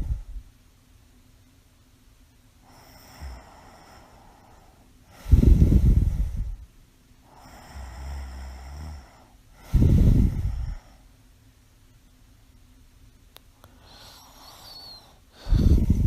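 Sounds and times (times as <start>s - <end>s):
quiet breath: 0.0s - 0.5s, 2.6s - 11.3s, 13.5s - 16.0s
woman snoring: 2.7s - 6.5s, 7.3s - 11.0s, 13.8s - 16.0s.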